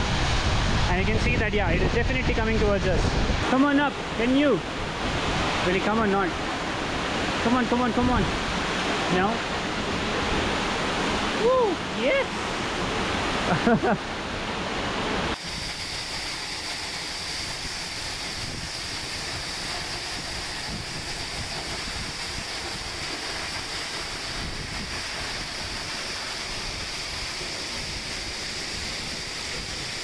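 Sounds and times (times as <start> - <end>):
wind buffeting microphone: 0.0 - 7.4, 15.2 - 30.0
waterfall rushing: 3.2 - 30.0.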